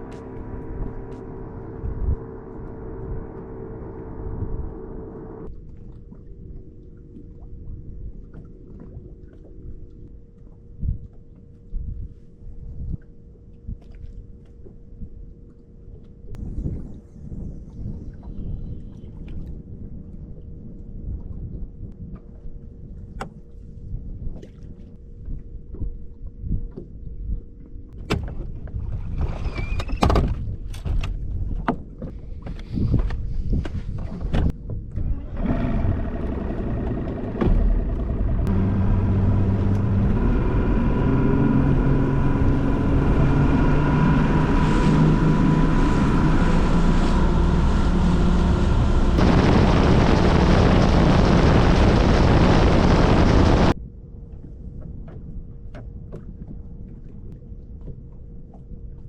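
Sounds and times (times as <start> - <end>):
outboard motor running: 0.0 - 5.8, 34.0 - 53.8
rush of wind and water: 0.0 - 59.0.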